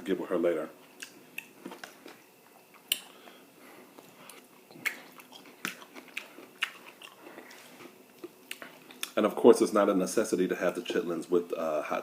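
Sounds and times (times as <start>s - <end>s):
close-up chewing: 1.0s - 9.2s
wet mouth smacks: 4.3s - 6.9s.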